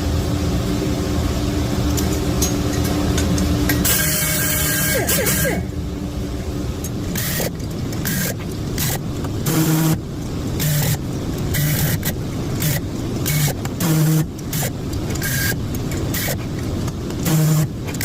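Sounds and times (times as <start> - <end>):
valve seat grinder running: 3.8 - 5.6, 7.1 - 18.0.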